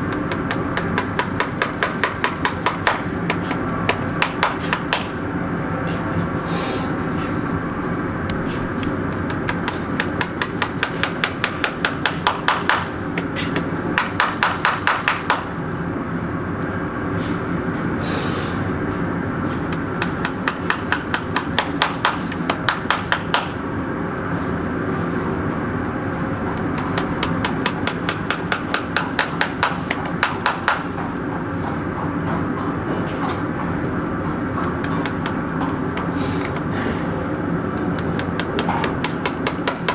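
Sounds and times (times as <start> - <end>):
hammer striking metal: 0.0 - 5.2, 8.8 - 15.4, 19.5 - 23.6, 26.6 - 30.9, 34.4 - 36.9, 37.7 - 39.9.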